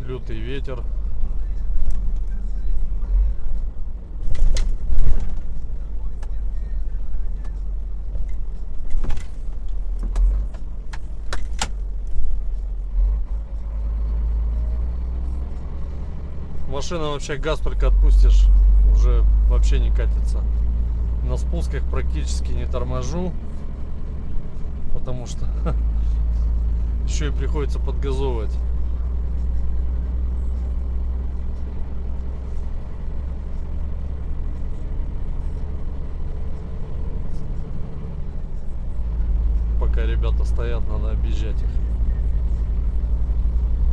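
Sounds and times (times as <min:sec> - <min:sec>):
road noise: 0:00.0 - 0:43.9
truck engine drone inside cab: 0:00.0 - 0:43.9.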